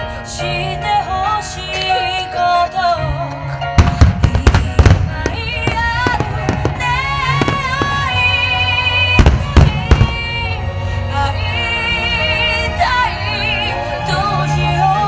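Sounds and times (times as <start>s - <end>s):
music melody: 0.0s - 15.0s
fireworks bursting bangs: 3.8s - 10.6s.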